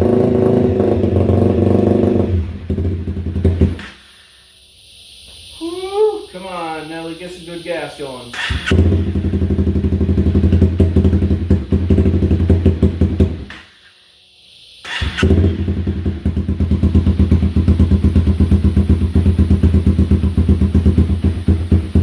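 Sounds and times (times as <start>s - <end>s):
motorcycle engine running rough: 0.0s - 3.8s, 8.7s - 13.5s, 14.9s - 22.0s.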